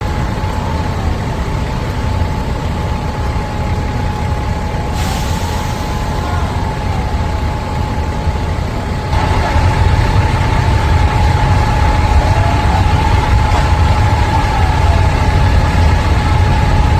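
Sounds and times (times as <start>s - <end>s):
heavy engines rumbling: 0.0s - 16.9s
high whine: 0.0s - 16.9s.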